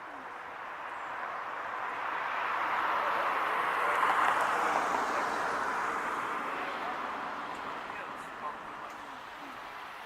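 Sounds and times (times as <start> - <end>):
car passing by: 0.3 - 10.0.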